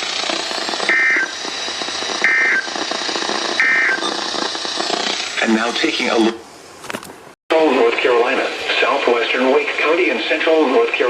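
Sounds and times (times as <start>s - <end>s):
harsh two-tone data bursts: 0.0s - 6.4s
radio static hiss: 0.8s - 6.5s, 7.5s - 11.0s.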